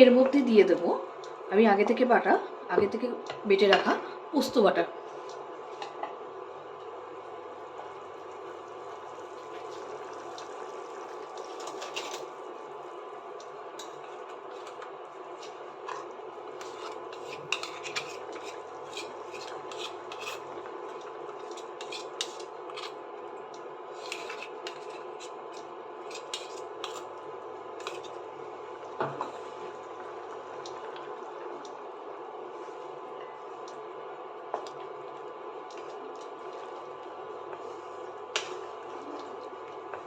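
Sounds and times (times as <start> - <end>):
spatula scraping a pan: 16.5 - 20.5, 21.5 - 23.0.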